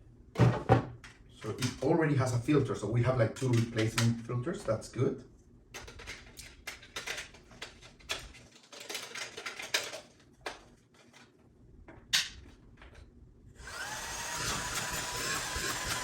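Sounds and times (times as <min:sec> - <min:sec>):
plastic parts clicking: 0:05.7 - 0:10.7
vacuum motor whining: 0:13.6 - 0:16.0.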